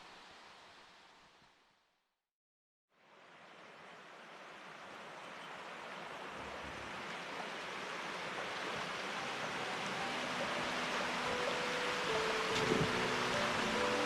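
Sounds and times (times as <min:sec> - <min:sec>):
waterfall rushing water: 0:03.0 - 0:14.0.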